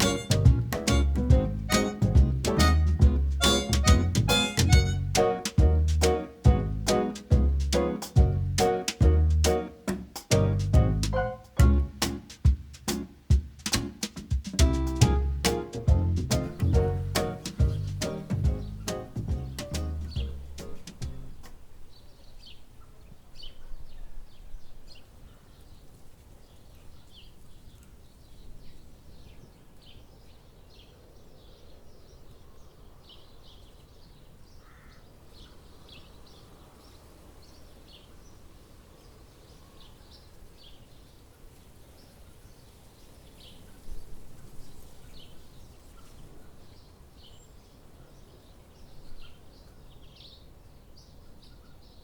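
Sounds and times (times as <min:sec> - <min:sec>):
low background rumble: 0:00.0 - 0:09.5
low thumps: 0:00.0 - 0:21.4
small birds chirping: 0:00.0 - 0:52.0.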